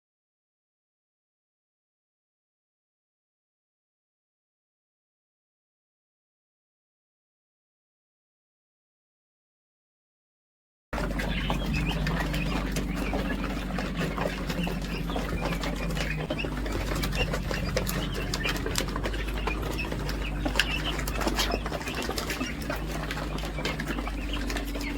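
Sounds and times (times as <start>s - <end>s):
chicken wings flapping: 11.0s - 24.9s
chickens chirping: 11.0s - 24.9s
steady low hum: 11.0s - 24.9s.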